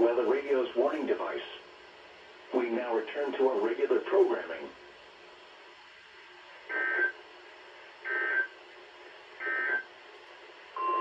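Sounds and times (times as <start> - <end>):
steady single-pitch alarm tone: 9.4 - 9.8.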